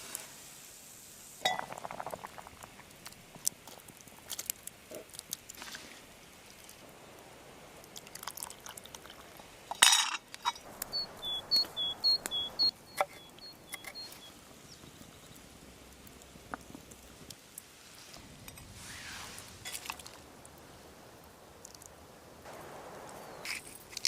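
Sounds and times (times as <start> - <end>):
small clicks and crunches: 3.0 - 6.8
short rustling scrape: 18.0 - 19.9.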